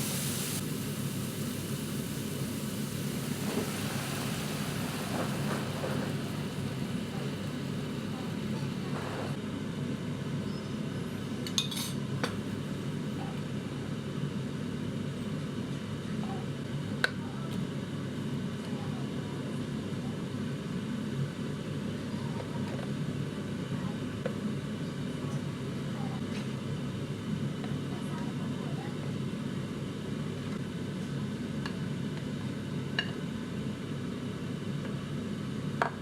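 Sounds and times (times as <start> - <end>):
steady low rumble: 0.0 - 9.4.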